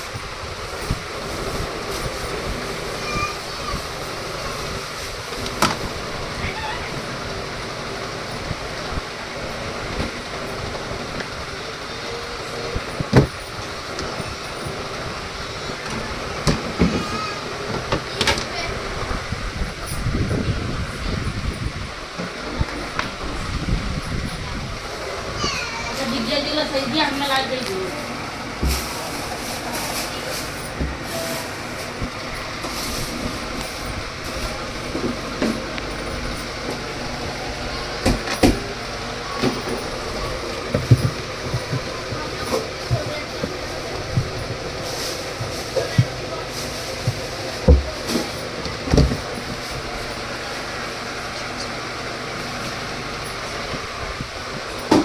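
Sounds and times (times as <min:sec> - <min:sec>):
washing machine knocking: 0:00.0 - 0:55.0
washing machine rumbling: 0:00.0 - 0:55.0
washing machine knocks: 0:13.0 - 0:14.5, 0:15.8 - 0:18.6, 0:30.6 - 0:49.9.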